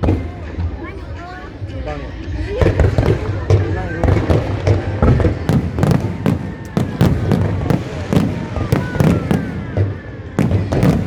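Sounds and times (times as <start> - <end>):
fireworks bangs and crackles: 0.0 - 11.0
fireworks falling whistles: 2.7 - 11.0.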